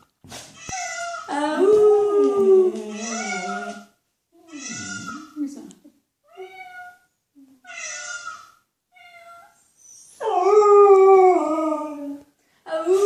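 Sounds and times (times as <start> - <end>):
cat meowing: 4.5 - 5.3, 6.3 - 9.6.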